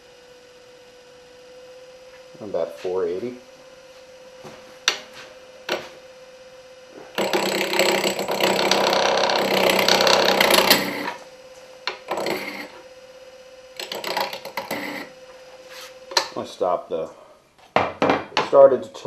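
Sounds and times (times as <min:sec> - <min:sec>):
wood lathe humming: 0:04.8 - 0:16.0
tool scraping spinning wood: 0:06.9 - 0:12.9, 0:13.8 - 0:16.1.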